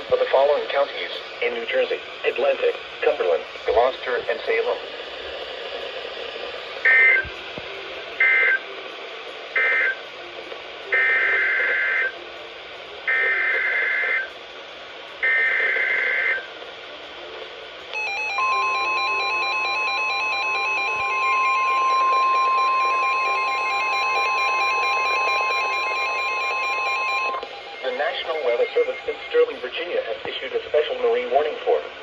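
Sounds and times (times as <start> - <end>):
warning alarm tone: 18.0 - 29.2
digital data bursts: 18.0 - 30.0.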